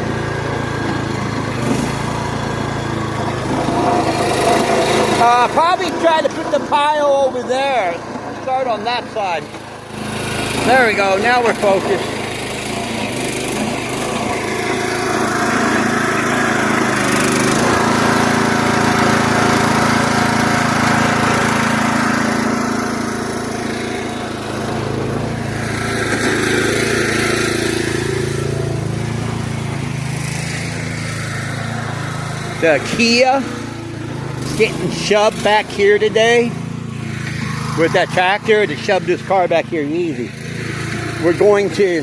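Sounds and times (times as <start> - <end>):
small gasoline engine running: 0.0 - 42.0.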